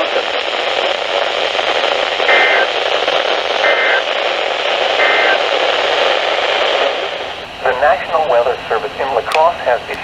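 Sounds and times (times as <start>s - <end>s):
radio static hiss: 0.0s - 10.0s
digital data bursts: 2.2s - 4.2s.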